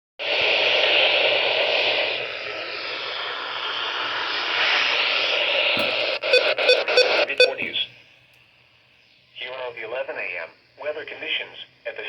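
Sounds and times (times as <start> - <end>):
radio static hiss: 0.2 - 7.9.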